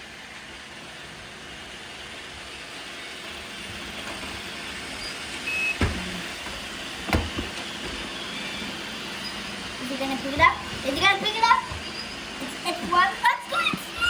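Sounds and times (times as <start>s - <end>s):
robot vacuum cleaners whirring: 0.0s - 14.0s.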